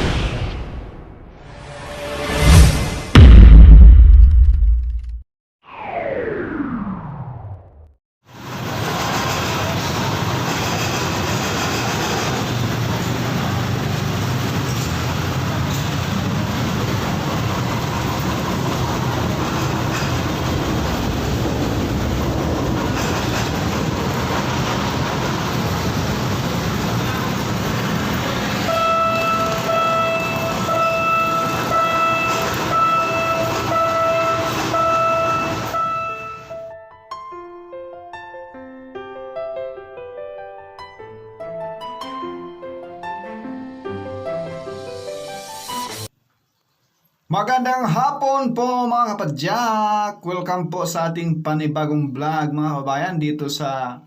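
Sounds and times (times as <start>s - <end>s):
train passing rumble: 8.3s - 36.6s
train horn blasts: 28.6s - 36.6s.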